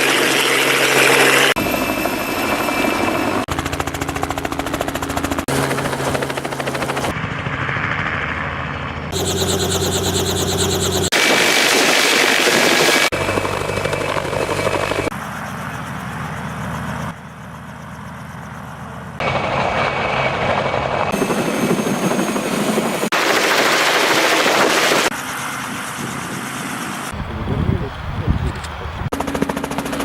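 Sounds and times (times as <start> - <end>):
helicopter engine and rotor: 0.0 - 30.0.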